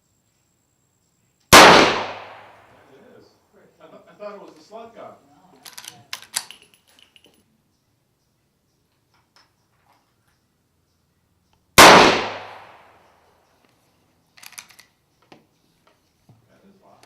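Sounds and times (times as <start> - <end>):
loud sharp gunshot: 1.5 - 2.7, 11.8 - 13.0.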